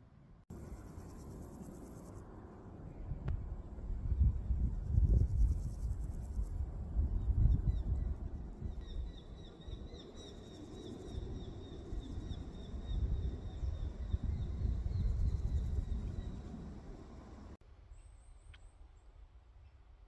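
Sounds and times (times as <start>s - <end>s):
low microphone rumble: 2.9s - 9.2s.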